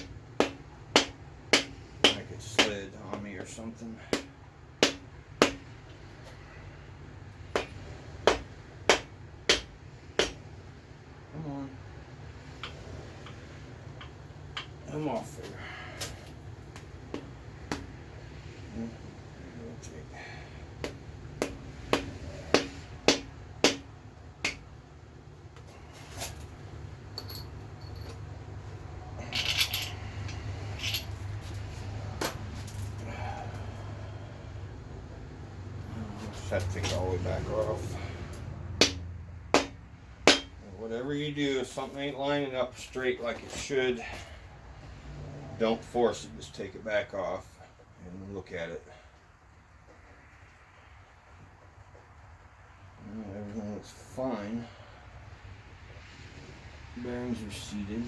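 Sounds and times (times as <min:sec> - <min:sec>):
sharp knocks on metal: 0:00.0 - 0:05.7, 0:07.5 - 0:10.4, 0:20.8 - 0:24.6, 0:38.8 - 0:40.6
metal parts clattering: 0:29.2 - 0:31.3.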